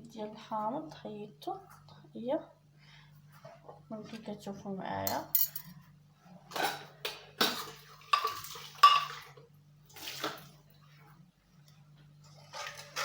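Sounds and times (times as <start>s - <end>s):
dishes and cutlery clinking: 6.5s - 9.3s.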